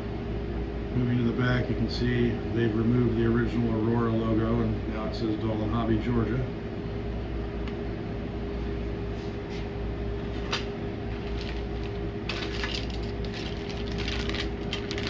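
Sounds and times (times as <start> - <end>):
plastic packaging crinkling: 10.4 - 15.0.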